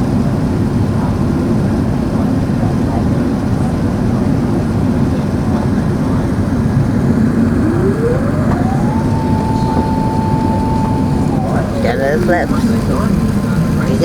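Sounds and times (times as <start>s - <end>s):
airliner cabin rumble: 0.0s - 14.0s
flap drive whine: 3.6s - 14.0s.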